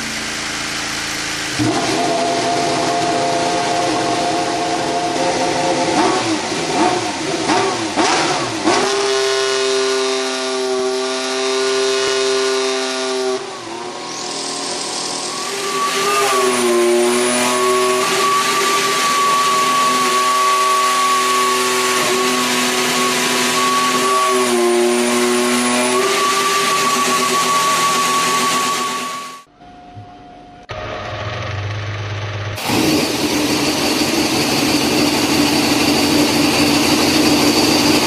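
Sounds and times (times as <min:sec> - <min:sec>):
racing car engine idling: 0:00.0 - 0:08.7, 0:30.7 - 0:38.0
high electric whine: 0:13.4 - 0:38.0.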